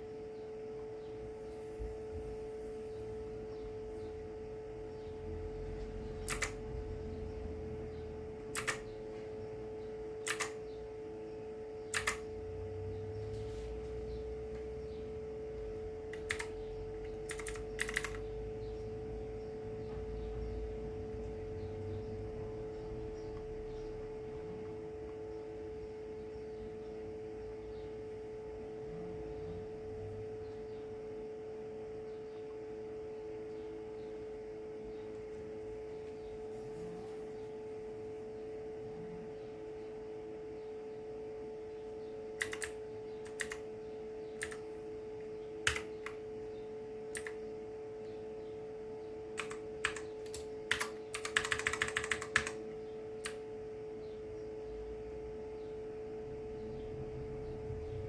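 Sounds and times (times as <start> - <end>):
steady hum: 0.0 - 58.0
mechanical keyboard clicking: 6.2 - 6.6, 8.5 - 8.8, 10.2 - 10.6, 11.9 - 12.2, 16.1 - 16.5, 17.3 - 18.2, 42.4 - 43.6, 44.4 - 44.6, 45.6 - 46.1, 47.2 - 47.4, 49.4 - 52.6.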